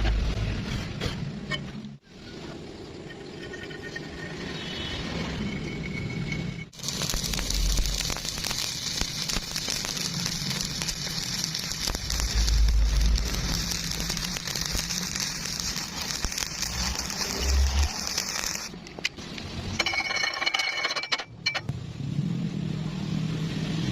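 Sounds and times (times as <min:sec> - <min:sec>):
arc welding crackling hiss: 0:06.7 - 0:19.1.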